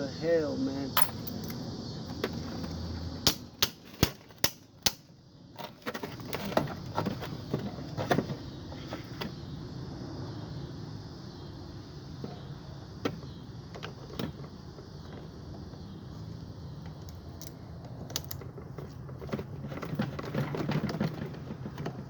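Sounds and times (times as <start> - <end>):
clicks of tools and metal parts: 1.0 - 1.6.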